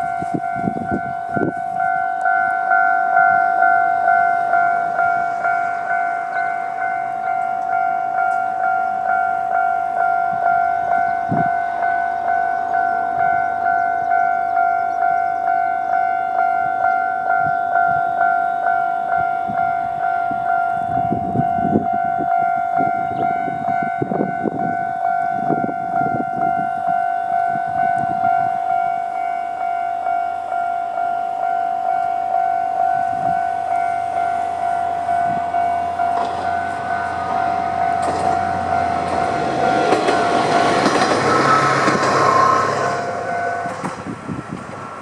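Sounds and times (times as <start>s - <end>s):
level crossing warning bell: 0.0s - 45.0s
train wheels clacking: 36.0s - 45.0s.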